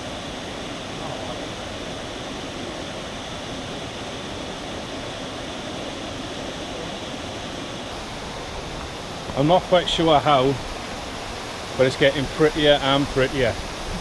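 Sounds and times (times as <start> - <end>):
waterfall rushing: 0.0 - 14.0.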